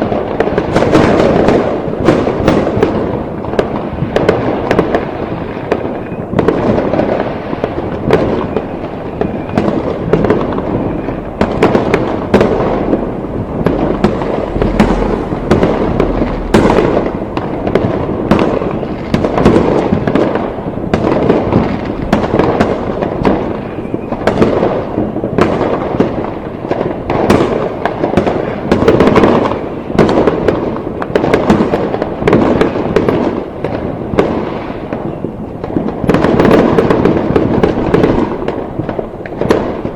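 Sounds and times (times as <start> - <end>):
fireworks bangs and crackles: 0.0 - 39.9
constant rumble: 9.9 - 18.6.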